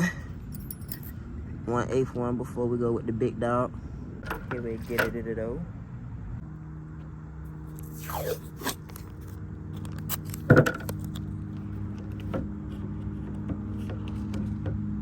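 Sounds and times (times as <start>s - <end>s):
steady low hum: 0.0s - 15.0s
metal parts clattering and scraping: 0.5s - 1.2s.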